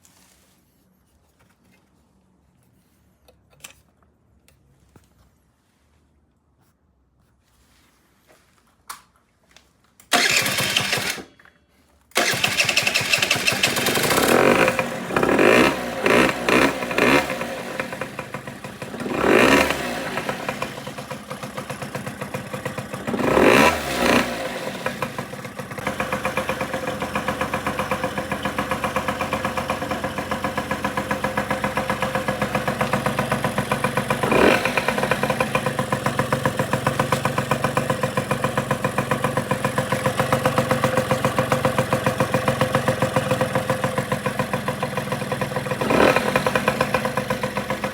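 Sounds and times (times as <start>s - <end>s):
two-stroke engine revving and idling: 10.1s - 11.3s, 12.2s - 47.9s.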